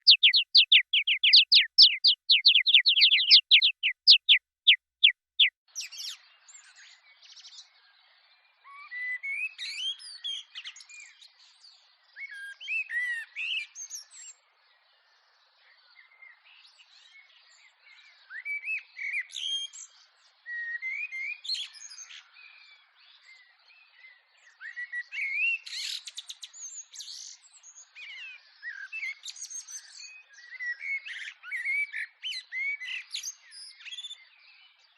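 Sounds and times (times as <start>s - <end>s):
bird chirping rapidly: 0.0s - 5.5s
birds singing and calling: 0.0s - 14.9s, 15.5s - 34.9s.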